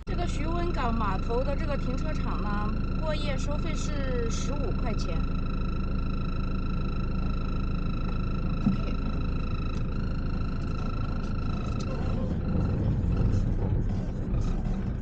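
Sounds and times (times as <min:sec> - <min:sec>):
engine low rumble: 0:00.0 - 0:15.0
high whine: 0:00.0 - 0:15.0.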